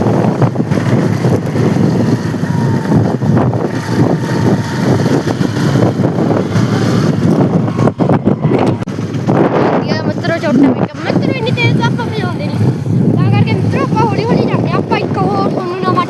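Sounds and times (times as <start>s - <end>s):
motorcycle engine running: 0.0s - 16.0s
wind buffeting microphone: 0.0s - 16.0s.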